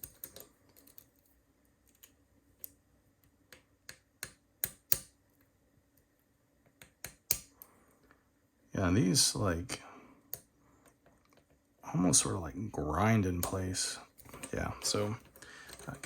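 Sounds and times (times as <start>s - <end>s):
lock pick clicking in padlock: 3.9s - 5.1s.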